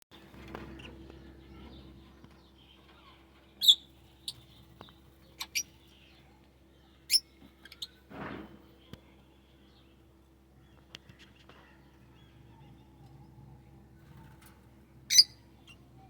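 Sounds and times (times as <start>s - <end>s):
birds shrill chirps: 0.4s - 8.1s, 15.1s - 16.0s.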